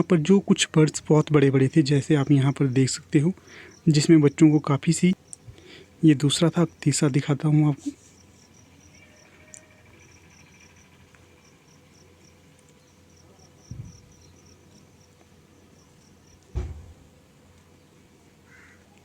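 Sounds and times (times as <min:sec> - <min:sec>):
cricket chirping: 0:01.7 - 0:07.4, 0:08.0 - 0:16.4
dull low thump: 0:13.7 - 0:14.1, 0:16.5 - 0:17.1.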